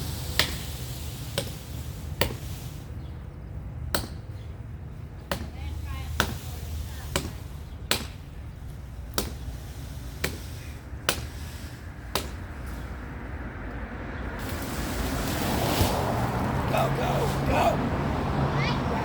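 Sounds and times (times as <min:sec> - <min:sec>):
axe chopping wood: 0:00.3 - 0:00.6, 0:01.4 - 0:01.6, 0:02.2 - 0:02.5, 0:03.9 - 0:04.4, 0:05.2 - 0:08.3, 0:09.1 - 0:09.6, 0:10.2 - 0:11.4, 0:12.1 - 0:12.5
rushing noise: 0:14.2 - 0:19.0.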